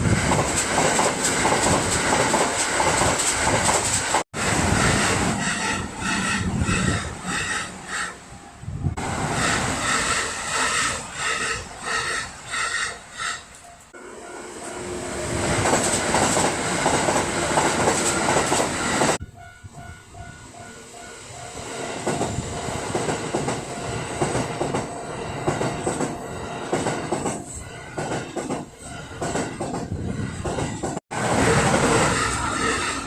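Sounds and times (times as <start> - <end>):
train wheels clattering on rails: 0.0 - 7.6, 15.4 - 19.2, 21.6 - 33.0
train rumble: 0.0 - 12.6, 13.2 - 33.0
level crossing warning bell: 13.5 - 16.2, 18.8 - 26.6.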